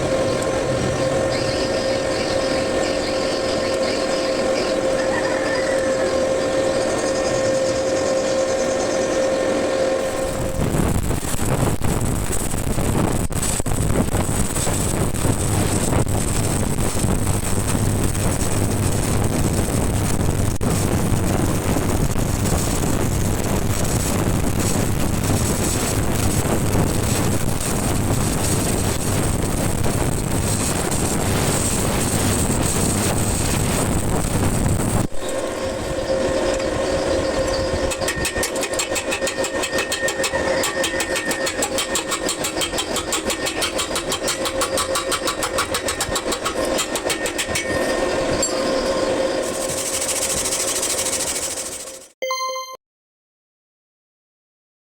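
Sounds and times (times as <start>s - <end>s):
held tones with fast pulsing: 0.0s - 11.4s, 34.6s - 52.1s
low electrical hum: 0.0s - 50.6s
welding arc crackling: 10.0s - 52.2s.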